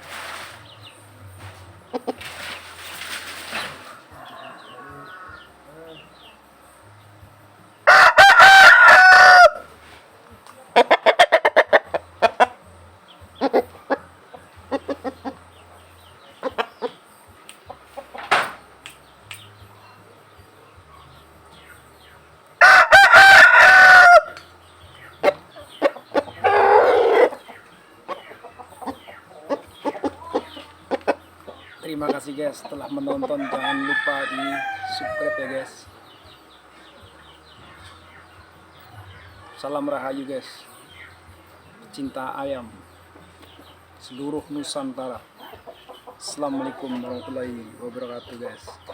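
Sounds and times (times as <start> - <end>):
chickens clucking: 0.0 - 48.9
rooster crowing: 3.8 - 5.6, 7.8 - 9.7, 22.6 - 24.5, 26.4 - 27.4, 33.2 - 35.8.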